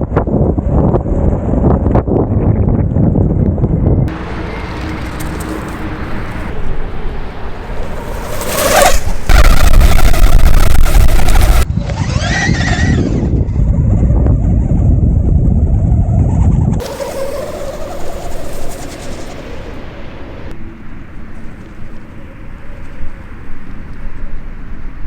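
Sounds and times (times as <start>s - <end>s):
skateboard wheels rumbling on road: 0.0s - 12.0s, 13.1s - 25.0s
wind on microphone: 0.0s - 25.0s
brief motor whine: 4.1s - 13.4s, 16.8s - 20.6s.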